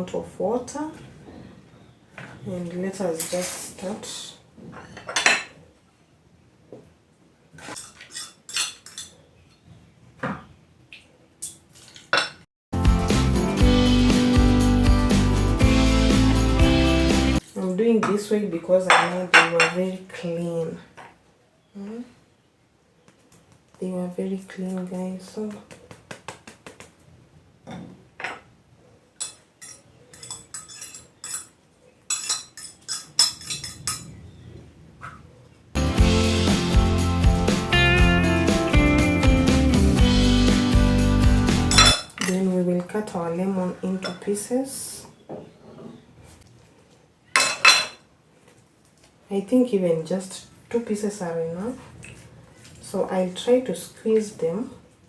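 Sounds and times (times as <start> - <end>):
utensils and pots clinking: 7.6 - 9.2, 29.2 - 34.2, 41.7 - 42.4, 47.4 - 48.0.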